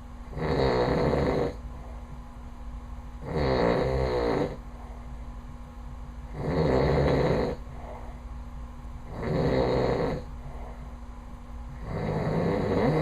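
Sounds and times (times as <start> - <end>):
man snoring: 0.3 - 1.6, 3.2 - 4.6, 6.3 - 7.6, 9.1 - 10.3, 11.8 - 13.0.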